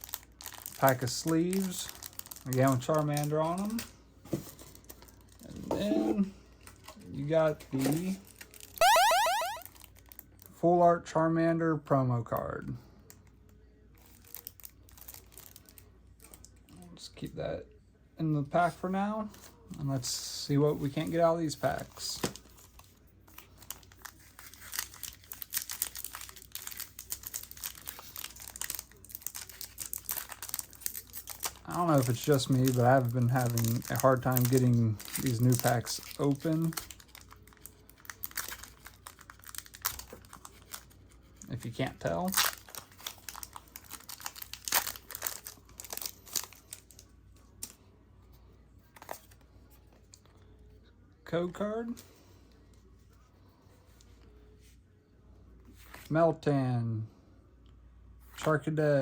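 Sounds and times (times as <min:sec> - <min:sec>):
foil wrapper crinkling: 0:00.0 - 0:03.8, 0:14.0 - 0:15.8, 0:22.4 - 0:47.8
foil wrapper tearing: 0:00.0 - 0:03.8, 0:22.6 - 0:41.0, 0:42.2 - 0:47.0.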